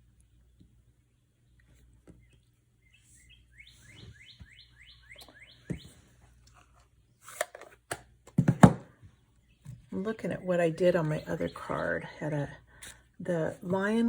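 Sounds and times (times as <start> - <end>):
bird chirping: 0.4 - 6.2.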